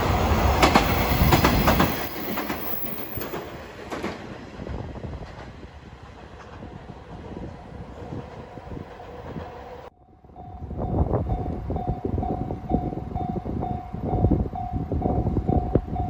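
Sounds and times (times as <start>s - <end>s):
train running past: 0.0s - 16.0s.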